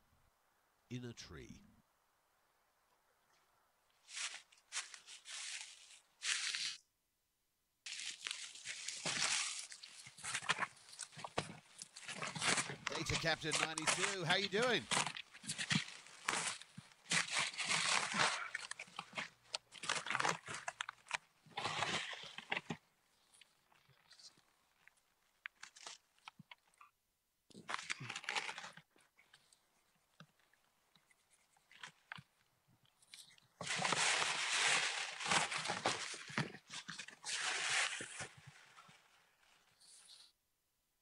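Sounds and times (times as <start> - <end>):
crunching rustling noise: 3.3 - 6.8, 7.8 - 26.9, 27.5 - 40.3.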